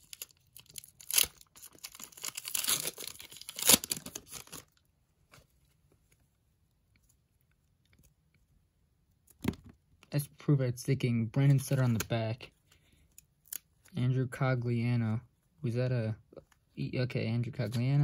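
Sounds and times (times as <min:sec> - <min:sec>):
foil wrapper crinkling: 0:00.0 - 0:04.8
wrapper tearing: 0:00.0 - 0:04.8.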